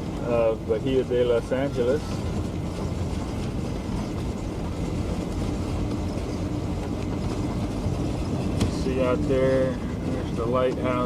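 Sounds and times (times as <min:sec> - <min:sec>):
vehicle engine and road rumble: 0:00.0 - 0:11.0.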